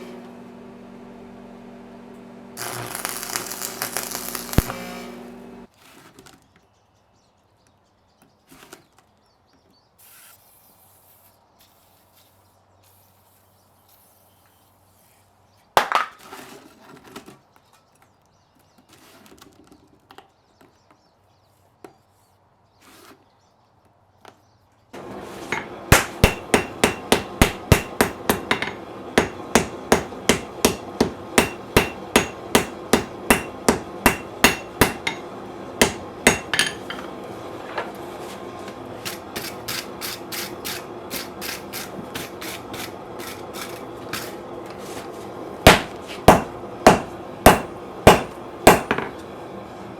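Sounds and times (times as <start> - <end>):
hammer beating steel on anvil: 25.5 - 37.1, 45.7 - 49.2.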